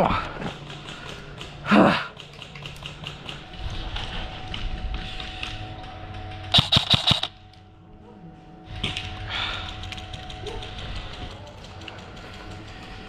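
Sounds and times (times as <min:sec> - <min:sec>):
airsoft gun shots: 0:06.5 - 0:07.3.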